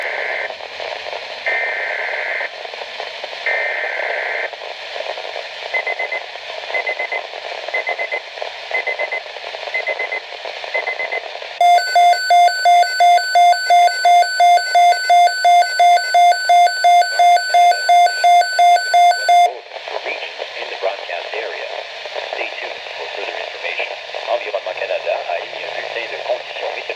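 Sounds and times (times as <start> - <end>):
faint short beeps: 11.6 - 19.5
loud alarm beeping: 11.6 - 19.5
radio hiss: 12.8 - 26.9.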